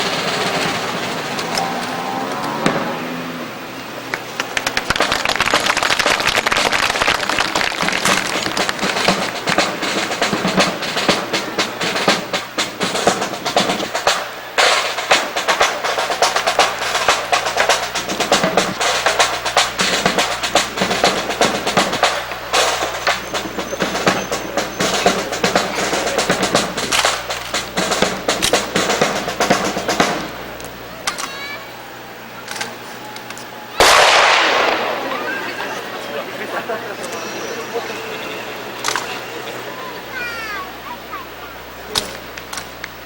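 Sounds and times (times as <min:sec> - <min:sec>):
snare drum rolls: 0:00.0 - 0:03.4, 0:04.1 - 0:31.2, 0:33.8 - 0:37.2.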